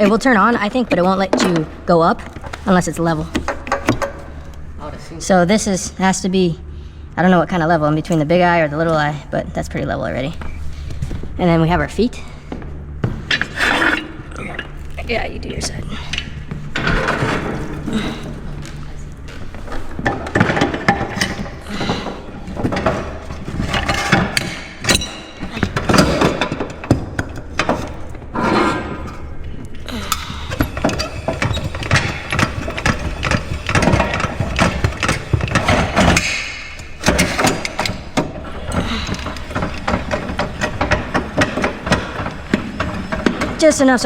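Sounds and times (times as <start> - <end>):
metallic clicking and clanking: 30.0 - 44.0.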